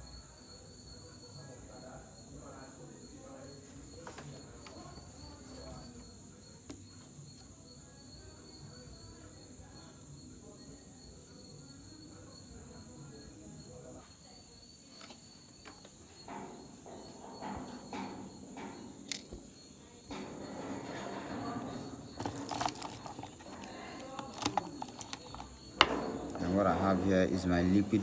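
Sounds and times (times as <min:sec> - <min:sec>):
crickets chirping: 0:00.0 - 0:28.0
rustling handling noises: 0:03.5 - 0:07.4, 0:20.4 - 0:28.0.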